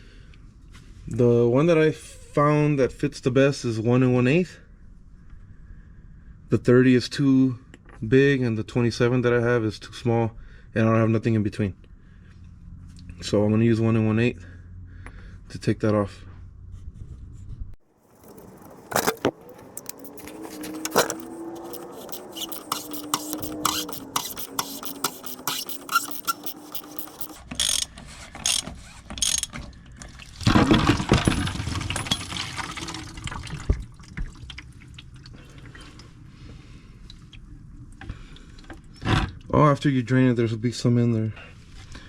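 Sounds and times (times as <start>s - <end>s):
plastic cover squeaking: 18.1s - 29.6s
socket ratchet clicking: 19.5s - 29.6s
fuel splashing out: 29.7s - 36.0s.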